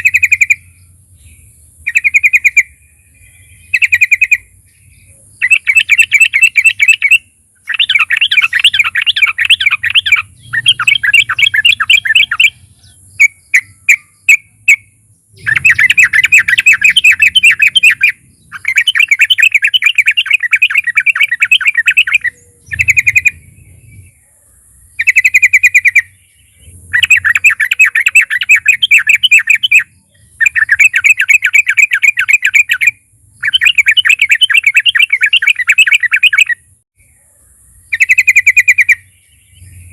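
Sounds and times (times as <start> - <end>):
bulbul singing bubbly phrases: 3.7 - 12.6, 15.4 - 23.6.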